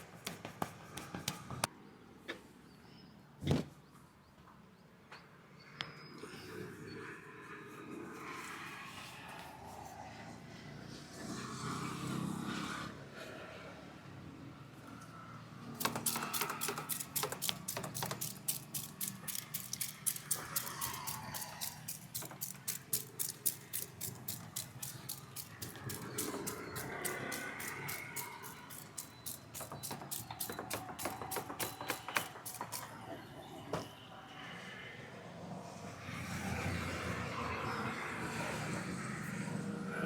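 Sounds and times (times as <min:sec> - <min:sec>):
hands tapping on head: 0:00.2 - 0:01.6.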